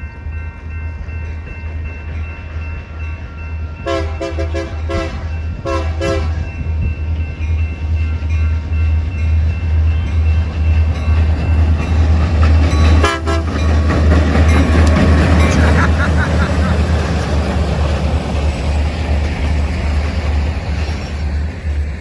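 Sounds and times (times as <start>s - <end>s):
diesel locomotive rumble: 0.0s - 22.0s
locomotive horn toots: 3.8s - 6.4s, 13.0s - 13.6s.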